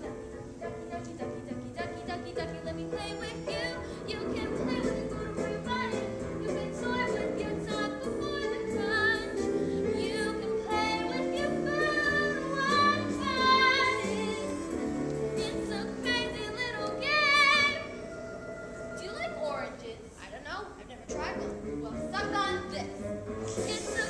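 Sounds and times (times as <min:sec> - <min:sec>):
musical accompaniment: 0:00.0 - 0:24.0
voices singing with vibrato: 0:01.2 - 0:19.7.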